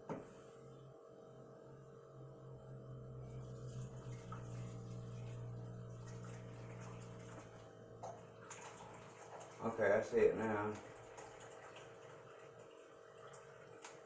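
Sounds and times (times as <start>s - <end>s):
water running into a container: 3.2s - 14.0s.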